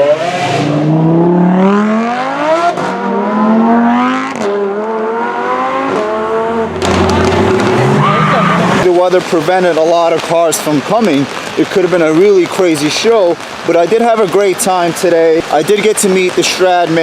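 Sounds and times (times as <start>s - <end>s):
car engine accelerating: 0.0s - 8.9s
rush of noise: 5.0s - 17.0s.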